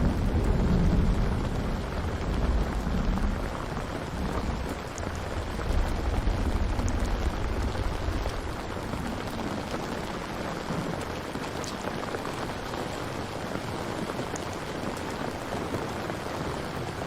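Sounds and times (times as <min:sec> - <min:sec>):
thunder rumble: 0:00.0 - 0:12.6
steady rain falling: 0:00.0 - 0:17.0.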